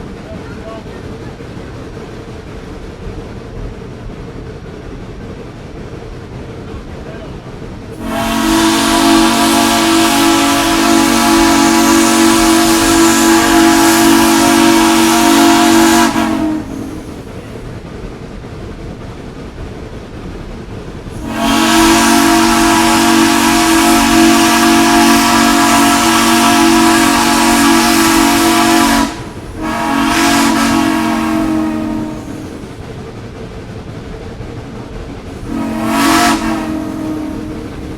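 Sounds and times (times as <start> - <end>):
train rumble and hiss: 0.0 - 37.9
steam locomotive whistle: 8.0 - 17.2, 21.2 - 32.6, 35.4 - 37.9.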